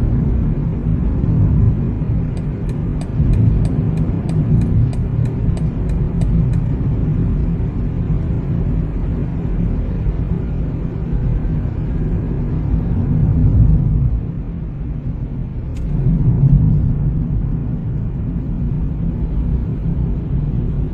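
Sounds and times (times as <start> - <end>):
car road and engine rumble: 0.0 - 20.9
turn signal ticking: 2.3 - 6.8.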